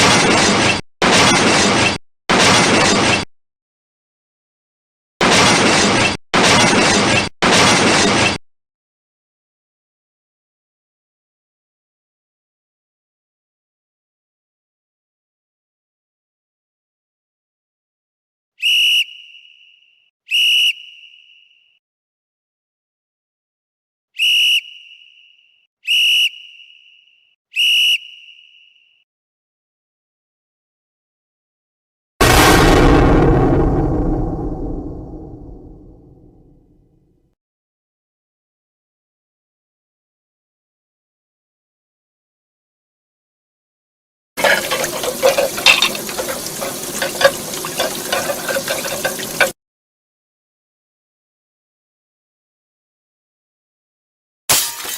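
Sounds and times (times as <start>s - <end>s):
sharp whistle blasts: 18.6s - 21.8s, 24.2s - 29.0s
crockery clinking: 44.4s - 49.5s
water splashing in sink: 44.4s - 49.5s.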